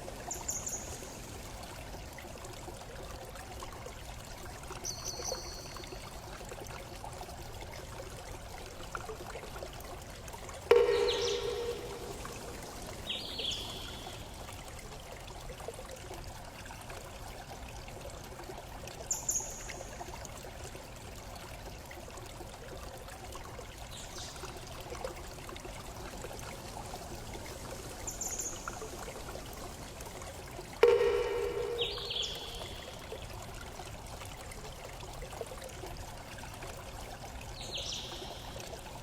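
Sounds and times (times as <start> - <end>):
rushing water: 0.0 - 39.0
high bird chirps: 10.7 - 14.2, 30.8 - 33.0.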